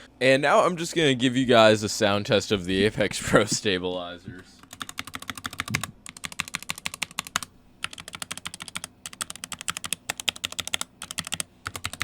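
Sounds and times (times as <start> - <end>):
mechanical keyboard clacking: 4.7 - 12.0.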